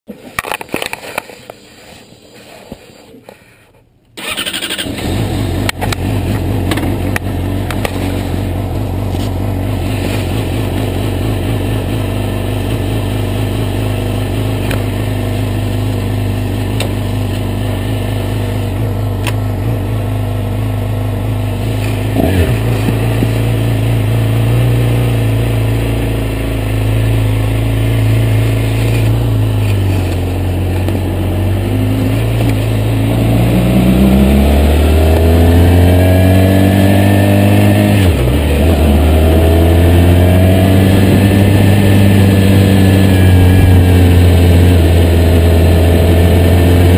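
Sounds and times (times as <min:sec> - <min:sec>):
motorcycle engine starting and idling: 0:04.1 - 0:46.9.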